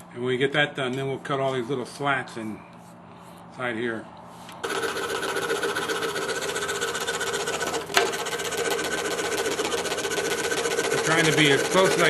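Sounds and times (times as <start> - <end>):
scroll saw cutting wood: 4.6 - 12.0.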